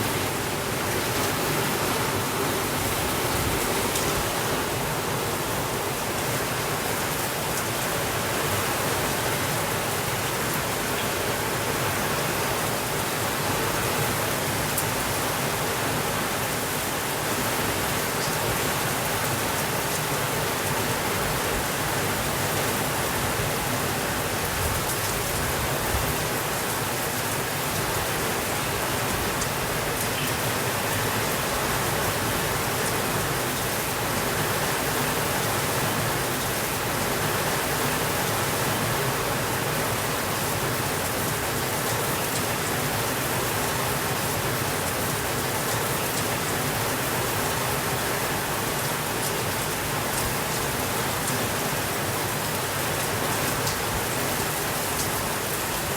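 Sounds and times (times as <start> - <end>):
steady rain: 0.0 - 55.9.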